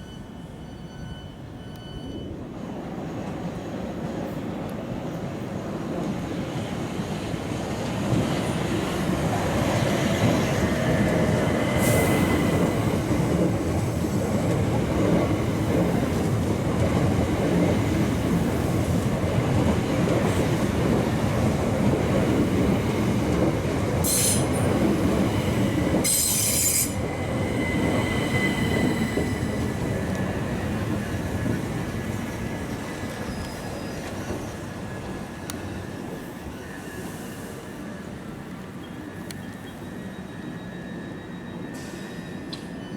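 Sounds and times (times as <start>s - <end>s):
train wheels rumbling on rail: 1.6s - 42.9s
high-pitched wheel squeal: 26.0s - 29.8s.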